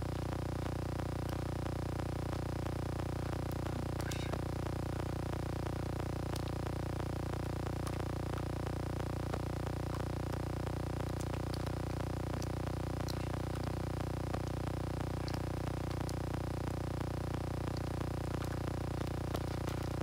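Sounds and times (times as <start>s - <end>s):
steady low hum: 0.0s - 20.0s
faint small clicks: 6.3s - 6.6s, 11.1s - 13.7s, 17.7s - 18.6s.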